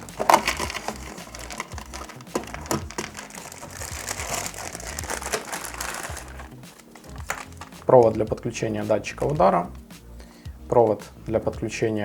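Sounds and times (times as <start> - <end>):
plastic wrapping crinkling: 0.0 - 8.2.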